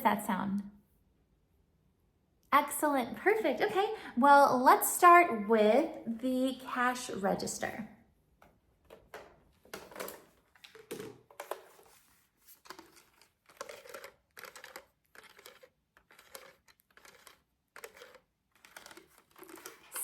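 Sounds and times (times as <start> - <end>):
plastic toy being handled: 8.8 - 20.0.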